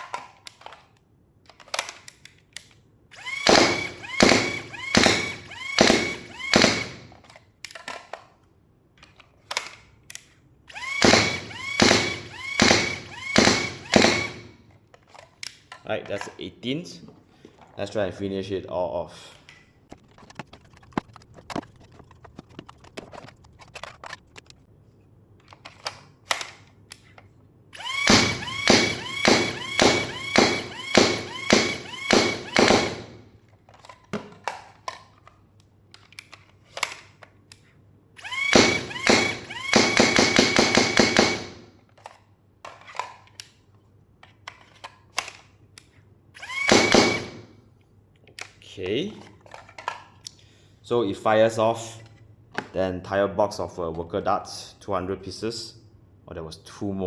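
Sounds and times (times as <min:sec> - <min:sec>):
magazine handling clicks: 0:00.1 - 0:02.8
foam dart blaster firing: 0:28.0 - 0:33.2.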